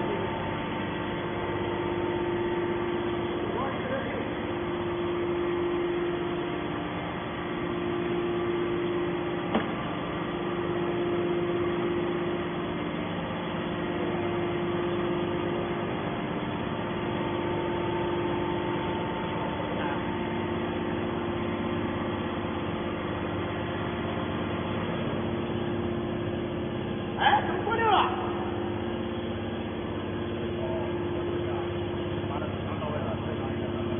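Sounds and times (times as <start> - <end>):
hydraulic power unit humming: 0.0 - 33.9.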